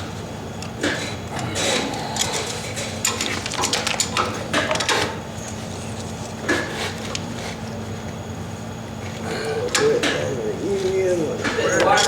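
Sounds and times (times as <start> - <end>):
steady low hum: 5.2 - 12.0.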